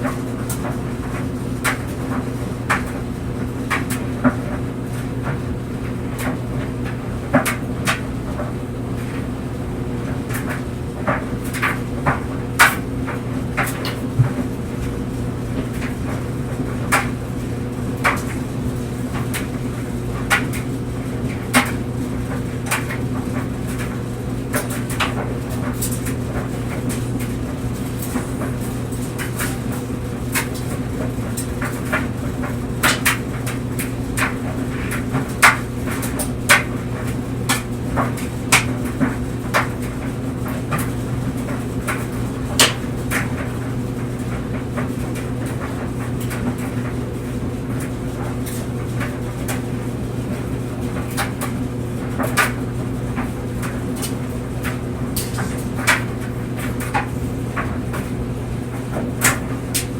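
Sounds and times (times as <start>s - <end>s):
knocks and clicks in dryer drum: 0.0s - 59.9s
tumble dryer motor hum: 0.0s - 59.9s.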